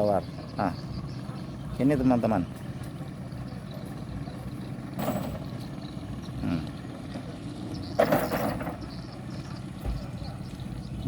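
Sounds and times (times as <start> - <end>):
low engine hum: 0.0 - 11.0.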